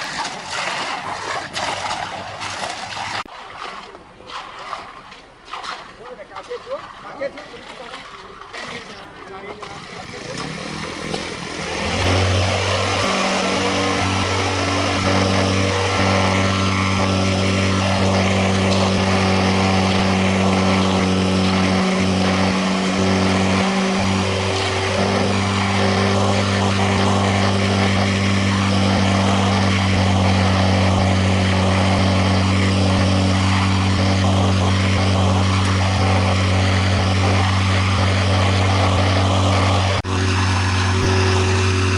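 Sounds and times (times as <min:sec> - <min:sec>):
heavy machinery engine running: 0:09.6 - 0:41.9.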